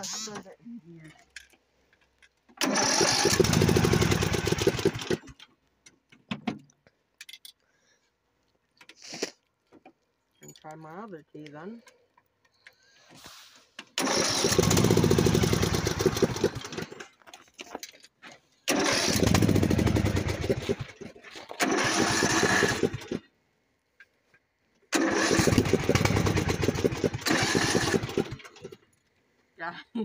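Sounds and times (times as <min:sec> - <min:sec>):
starter cranking engine: 0:02.6 - 0:05.4, 0:14.0 - 0:17.1, 0:18.7 - 0:23.3, 0:24.9 - 0:28.8.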